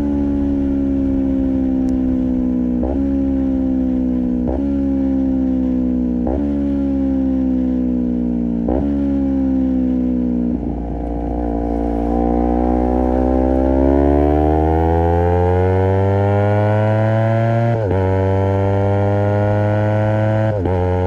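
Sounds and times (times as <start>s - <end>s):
motorcycle engine revving: 0.0s - 21.0s
gear shifts: 10.5s - 15.8s.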